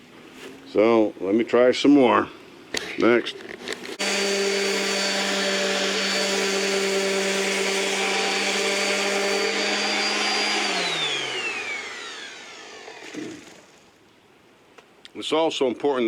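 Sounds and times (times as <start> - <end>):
electric sander sanding wood: 4.0 - 13.8.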